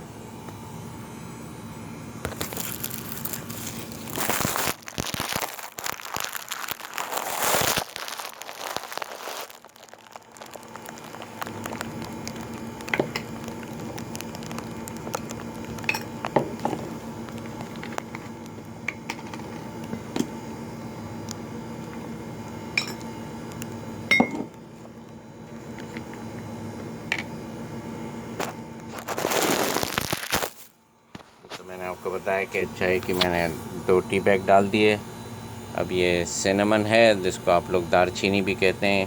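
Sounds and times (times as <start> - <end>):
steady background hum: 0.0 - 39.0
jars clicking and clinking: 9.4 - 18.3, 22.8 - 23.1, 24.1 - 24.5.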